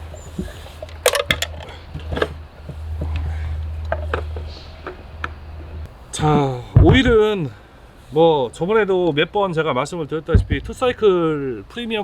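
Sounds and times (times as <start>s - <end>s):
fuel container clicks and knocks: 0.0s - 5.9s
low hum: 0.0s - 7.2s.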